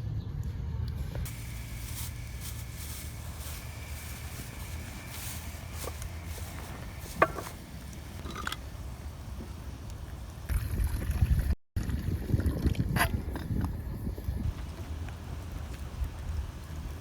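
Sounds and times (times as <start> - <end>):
steady low rumble: 0.0 - 17.0
faint crackles: 1.0 - 11.3, 14.5 - 17.0.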